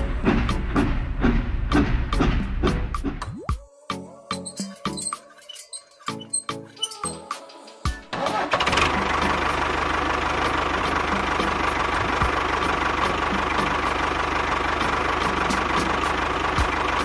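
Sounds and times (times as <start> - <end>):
engine running with clatter: 0.0 - 3.2, 8.1 - 17.0.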